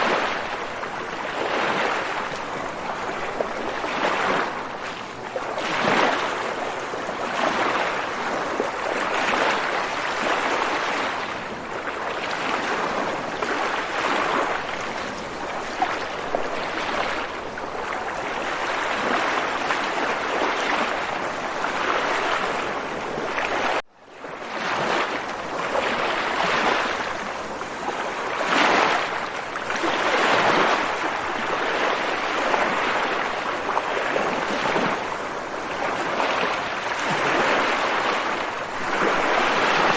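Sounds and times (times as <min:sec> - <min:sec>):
water waves washing: 0:24.4 - 0:39.9.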